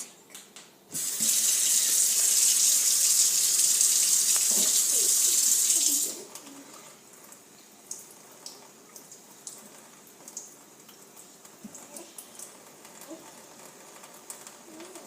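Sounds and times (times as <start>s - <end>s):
sink tap running: 0.9s - 6.4s.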